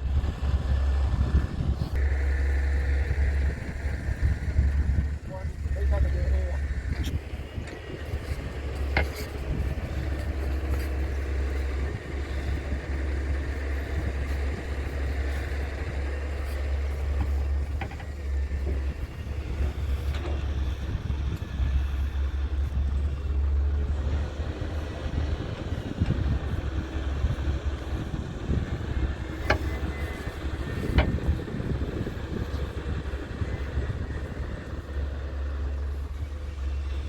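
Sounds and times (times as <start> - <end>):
excavator diesel engine rumbling: 0.0 - 37.0
short knocks: 29.3 - 30.2.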